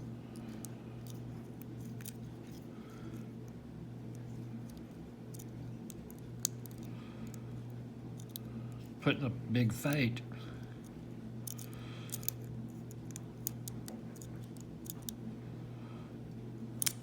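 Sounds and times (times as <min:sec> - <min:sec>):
steady low hum: 0:00.0 - 0:17.0
lock pick clicking and scraping: 0:04.1 - 0:07.4, 0:08.2 - 0:08.5, 0:10.8 - 0:15.2.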